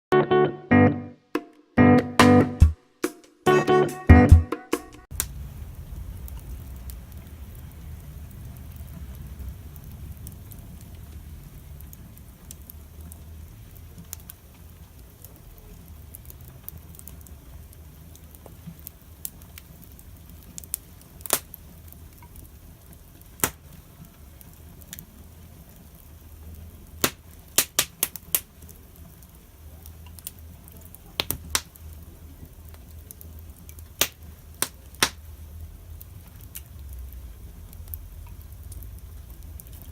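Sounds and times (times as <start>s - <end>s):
campfire crackling and popping: 5.0s - 39.9s
low rumble: 5.1s - 13.8s, 35.3s - 39.9s.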